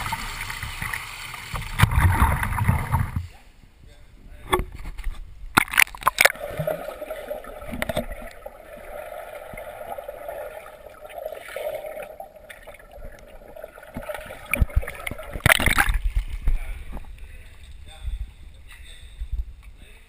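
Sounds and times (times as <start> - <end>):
water splashing around a kayak: 5.6 - 16.7.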